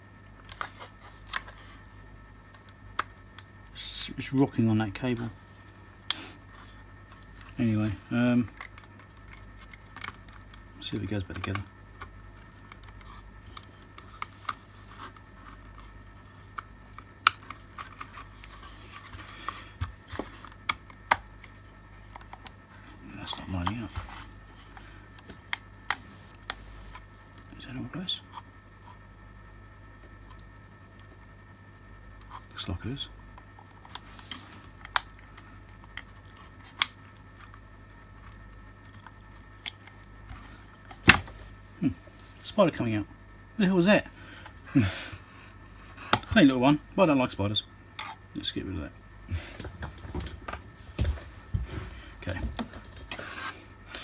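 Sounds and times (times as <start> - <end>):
plastic parts clicking: 8.5 - 15.1
plastic scraping: 11.3 - 25.4, 49.4 - 54.0.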